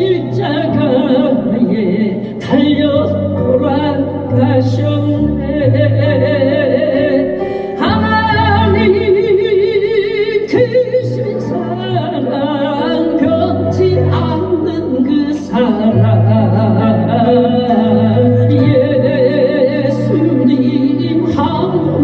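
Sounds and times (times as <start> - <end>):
person singing a hymn: 0.0 - 22.0.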